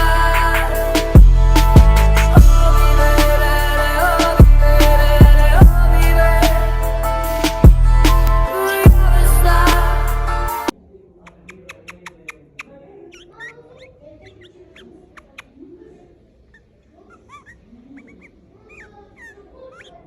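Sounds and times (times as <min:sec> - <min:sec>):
bird calling with sharp clicks: 0:11.3 - 0:15.6.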